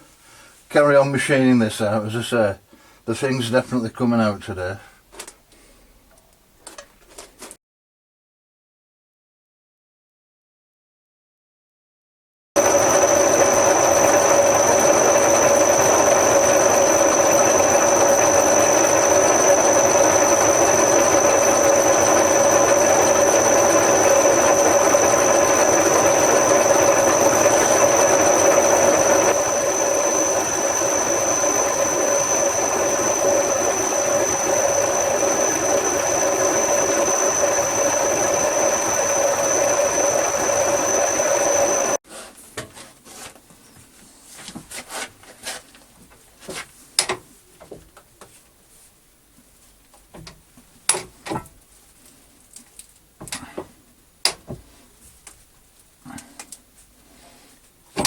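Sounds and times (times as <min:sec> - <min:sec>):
machine tool cutting metal: 0:12.6 - 0:42.0
steady machine whine: 0:12.6 - 0:42.0.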